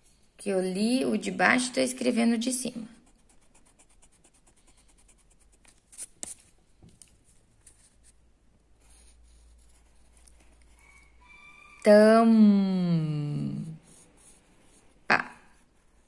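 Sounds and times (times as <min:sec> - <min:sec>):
pen scratching on paper: 0:02.9 - 0:06.5, 0:08.8 - 0:10.7, 0:13.7 - 0:16.0.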